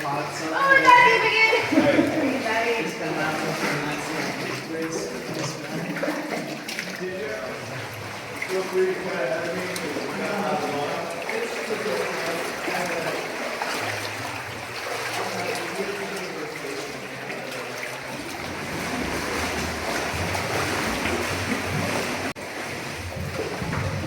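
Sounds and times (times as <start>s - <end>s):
stream water running over rock: 2.4s - 24.0s.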